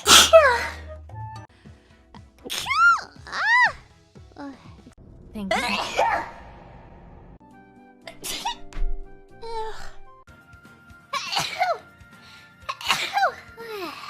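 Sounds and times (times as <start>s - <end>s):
young women sneezing: 0.0s - 0.8s, 11.1s - 11.8s, 12.7s - 13.4s
background music: 0.0s - 14.0s.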